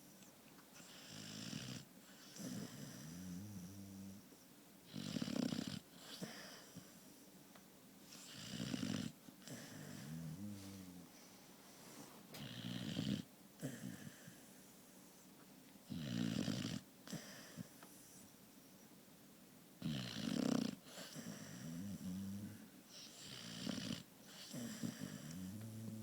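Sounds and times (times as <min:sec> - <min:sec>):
pet snoring: 0:00.8 - 0:04.3, 0:04.9 - 0:07.0, 0:08.1 - 0:11.1, 0:12.3 - 0:14.5, 0:15.8 - 0:18.2, 0:19.8 - 0:26.0.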